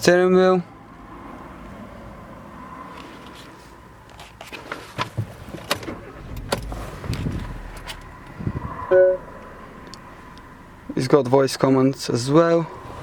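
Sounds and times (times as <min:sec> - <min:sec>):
sharp clicks of car controls: 0:05.0 - 0:10.5.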